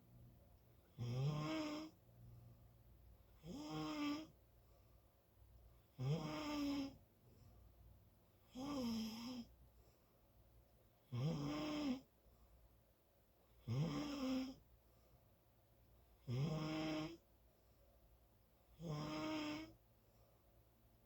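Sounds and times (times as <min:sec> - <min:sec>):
faint low hum: 0:00.0 - 0:21.0
person snoring: 0:01.0 - 0:01.9, 0:03.4 - 0:04.3, 0:06.0 - 0:07.0, 0:08.5 - 0:09.5, 0:11.1 - 0:12.0, 0:13.6 - 0:14.6, 0:16.3 - 0:17.2, 0:18.8 - 0:19.8.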